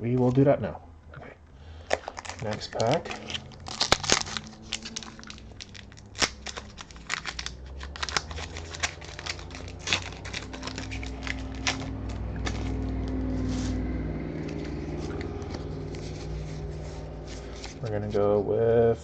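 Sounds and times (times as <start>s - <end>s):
foil wrapper crinkling and tearing: 1.8s - 16.4s.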